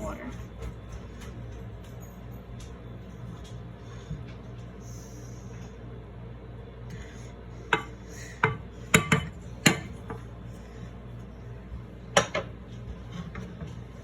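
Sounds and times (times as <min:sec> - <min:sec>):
steady low hum: 0:00.0 - 0:14.0
utensils knocking in a pan: 0:07.7 - 0:10.2.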